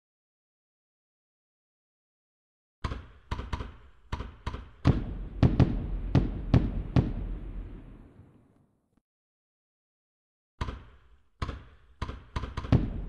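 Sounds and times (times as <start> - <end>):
echo of bangs: 2.8 - 8.5, 10.6 - 13.0
fireworks bangs: 4.7 - 8.6, 12.7 - 13.0.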